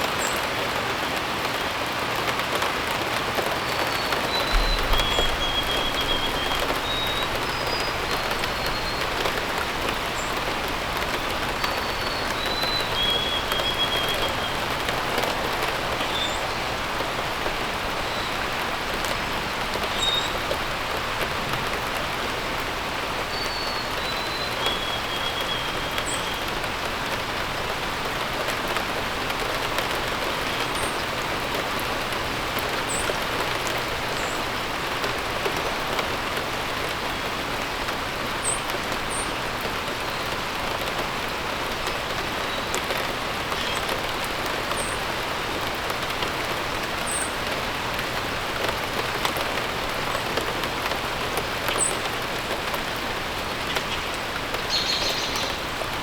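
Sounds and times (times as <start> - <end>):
rain pattering on surfaces: 0.0 - 56.0
faint high bird chirps: 4.0 - 9.2.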